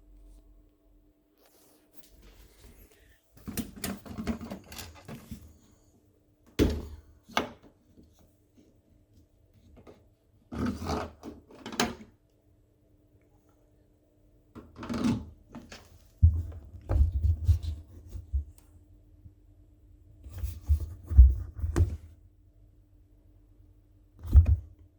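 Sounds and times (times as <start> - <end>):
faint steady hum: 0.0 - 10.5, 11.7 - 24.9
plastic filter clattering and knocking: 3.4 - 5.5, 14.6 - 17.8.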